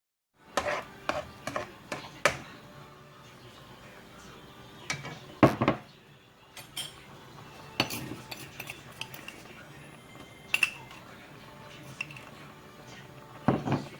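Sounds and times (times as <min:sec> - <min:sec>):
utensils and dishes clinking: 0:00.6 - 0:02.6, 0:04.8 - 0:13.9.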